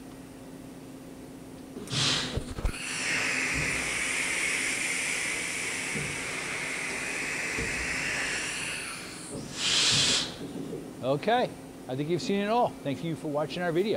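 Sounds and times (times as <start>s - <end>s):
machine pneumatic hiss: 1.8s - 10.8s
machine knocks: 3.4s - 4.0s.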